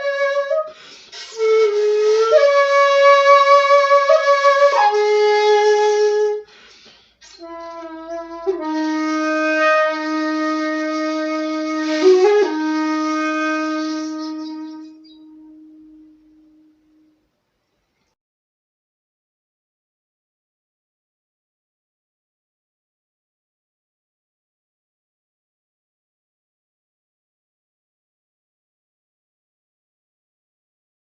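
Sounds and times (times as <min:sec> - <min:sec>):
bamboo flute playing: 0:00.0 - 0:06.5, 0:07.2 - 0:17.2
player breath: 0:00.7 - 0:01.2, 0:06.5 - 0:07.4.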